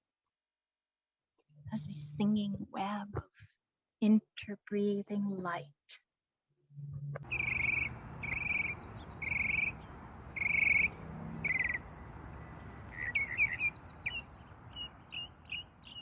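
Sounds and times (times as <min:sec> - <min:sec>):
buzzy pulsed bird call: 0:07.2 - 0:16.0
outdoor background hiss: 0:07.2 - 0:16.0
quick bird chirps: 0:07.2 - 0:16.0.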